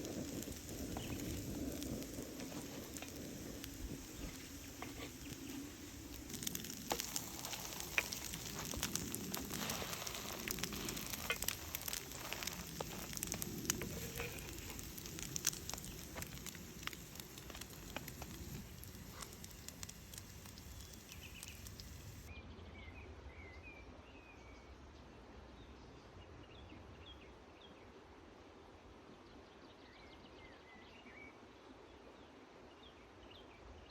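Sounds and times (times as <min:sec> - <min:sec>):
campfire crackling and popping: 0:00.0 - 0:22.3
faint birdsong: 0:00.2 - 0:24.6.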